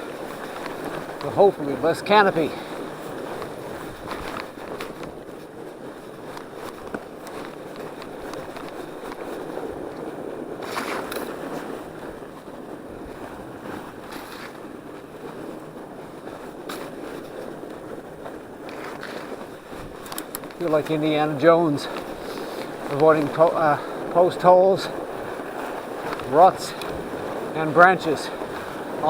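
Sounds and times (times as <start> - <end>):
tyres rolling over snow: 0.0 - 29.0
bike clicks and knocks: 6.2 - 11.7, 18.6 - 21.2.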